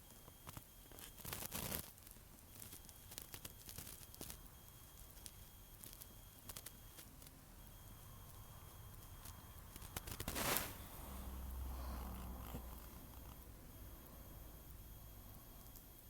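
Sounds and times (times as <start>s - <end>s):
rustling and crackling: 9.0s - 13.5s.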